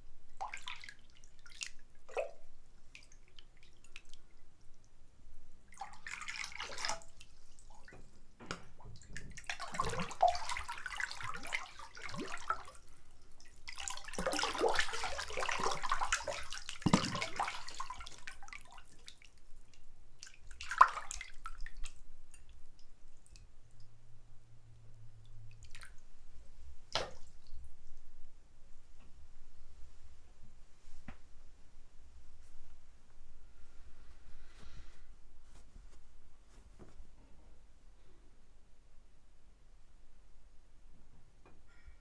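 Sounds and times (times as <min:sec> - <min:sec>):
water plop: 0:00.4 - 0:02.4, 0:05.8 - 0:07.2, 0:07.8 - 0:12.8, 0:13.4 - 0:18.9, 0:20.2 - 0:23.9, 0:25.5 - 0:26.0, 0:26.8 - 0:28.1
bathwater splashing: 0:05.7 - 0:19.3, 0:20.2 - 0:22.1, 0:25.3 - 0:28.1.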